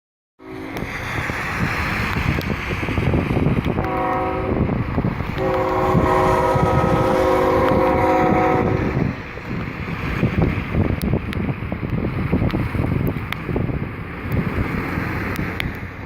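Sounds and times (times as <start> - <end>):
locomotive air horn chord: 0.4 - 1.0, 3.8 - 4.8, 5.4 - 9.0
wind rumble on microphone: 0.4 - 16.0.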